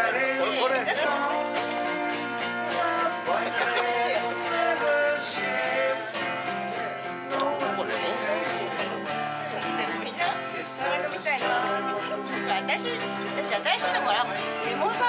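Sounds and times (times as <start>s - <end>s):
acoustic guitar strumming and melody: 0.0s - 15.0s.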